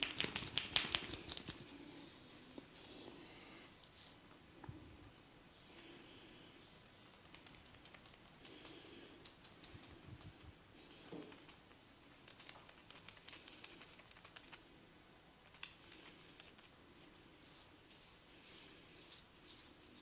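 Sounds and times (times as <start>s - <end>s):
hands rubbing hair: 0.0s - 2.7s, 7.2s - 10.5s, 11.3s - 14.6s, 15.4s - 20.0s.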